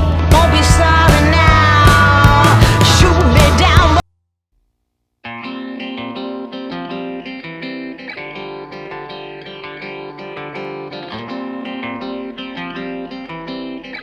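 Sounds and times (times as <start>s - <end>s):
gently picked guitar piece: 5.2s - 14.0s.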